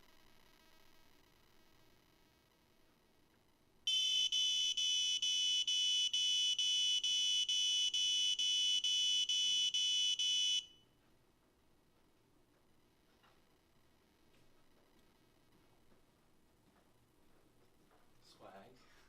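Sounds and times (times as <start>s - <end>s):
high-pitched alarm buzzer: 3.9s - 10.8s.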